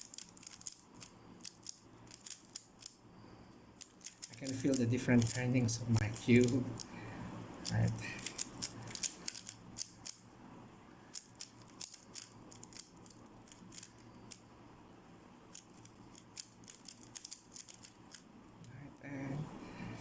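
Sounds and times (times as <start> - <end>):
puzzle cube plastic clicks: 0.0 - 3.0, 3.8 - 6.9, 7.6 - 10.2, 11.1 - 14.4, 15.5 - 18.3.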